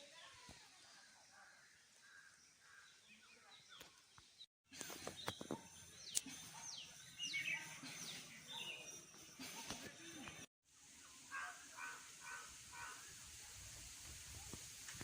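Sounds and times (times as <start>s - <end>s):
birds chirping: 0.1s - 10.5s.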